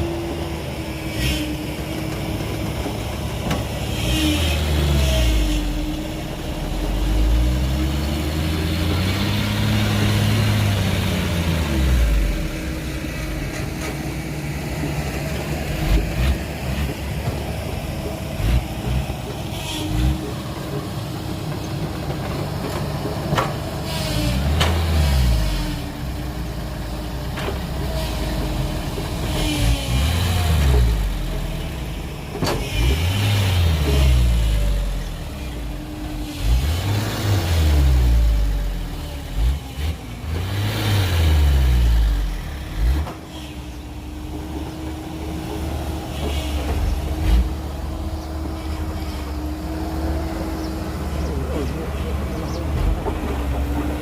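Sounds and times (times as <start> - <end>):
heavy diesel engine revving: 0.0 - 54.0.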